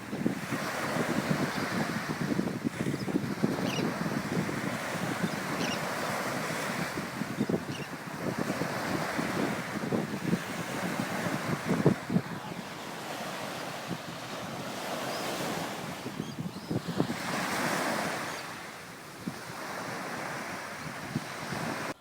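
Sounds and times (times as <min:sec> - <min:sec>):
wind buffeting microphone: 0:00.0 - 0:18.5
ocean surf washing onto beach: 0:00.0 - 0:22.0.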